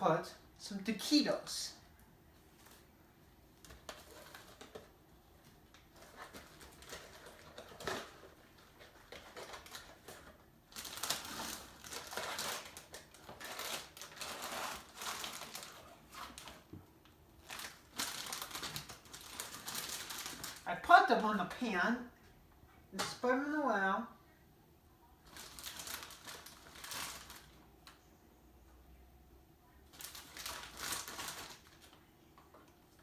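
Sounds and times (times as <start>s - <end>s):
plastic bag crinkling: 3.6s - 16.7s, 17.4s - 21.6s, 25.2s - 27.6s, 29.9s - 32.0s.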